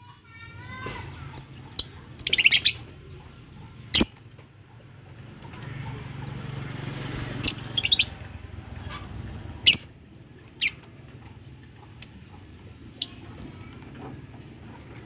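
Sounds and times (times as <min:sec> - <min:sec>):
lovebirds chirping: 0:01.2 - 0:03.3, 0:07.4 - 0:08.2, 0:08.8 - 0:09.9.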